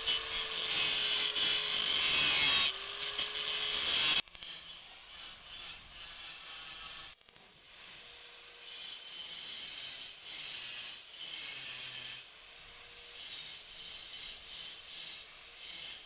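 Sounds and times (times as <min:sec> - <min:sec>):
hand tool rasping over metal: 0:00.0 - 0:07.2.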